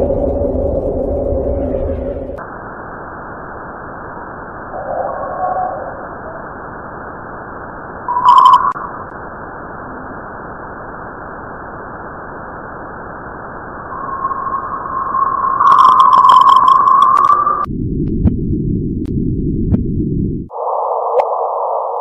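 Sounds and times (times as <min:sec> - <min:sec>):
steady tone: 0:00.0 - 0:21.2
static hiss: 0:02.4 - 0:17.7.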